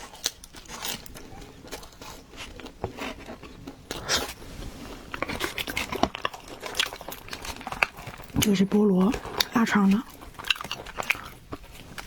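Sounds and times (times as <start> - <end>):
person chewing pizza: 0.0 - 12.0
crunchy bite: 9.2 - 12.0.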